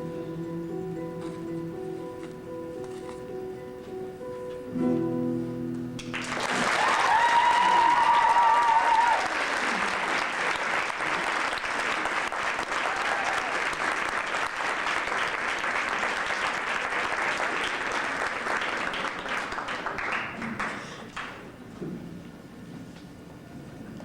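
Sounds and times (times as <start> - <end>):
audience applauding: 6.0 - 21.4.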